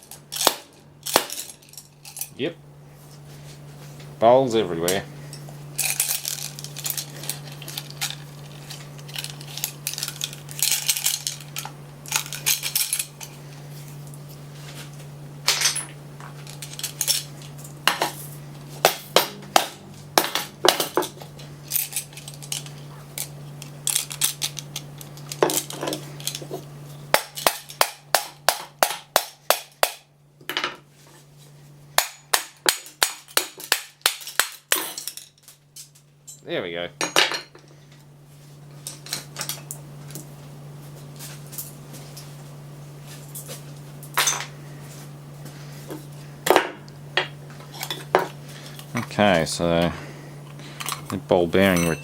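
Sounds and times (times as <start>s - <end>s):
steady low hum: 0.0s - 52.0s
metal parts clattering and clinking: 1.0s - 2.4s, 5.8s - 13.4s, 15.5s - 26.6s.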